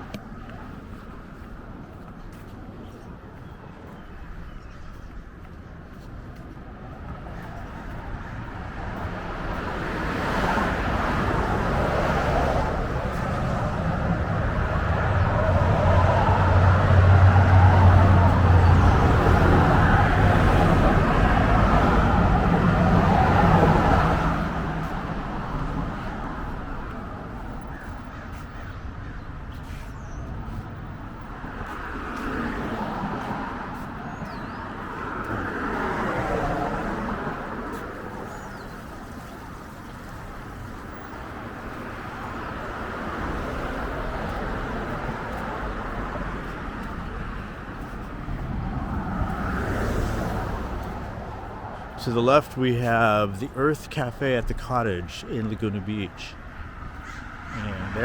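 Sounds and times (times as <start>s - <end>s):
street ambience: 0.0s - 58.0s
vehicle passing close by: 7.6s - 28.7s, 29.6s - 58.0s
faint bird calls: 57.0s - 58.0s.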